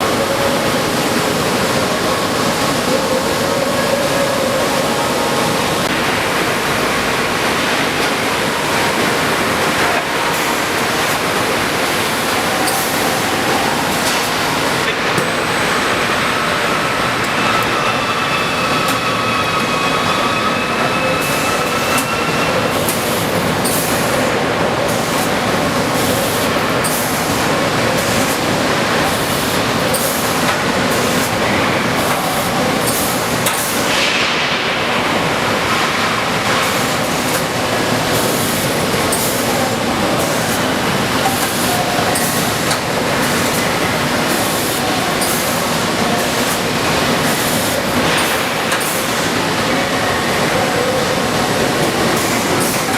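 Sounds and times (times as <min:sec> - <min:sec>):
industrial machinery noise: 0:00.0 - 0:52.9.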